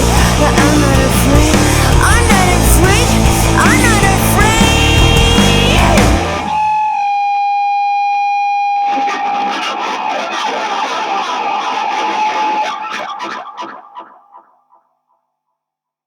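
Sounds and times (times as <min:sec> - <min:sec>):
rock band playing: 0:00.0 - 0:07.3, 0:08.6 - 0:14.1
distorted electric guitar note: 0:00.0 - 0:14.2.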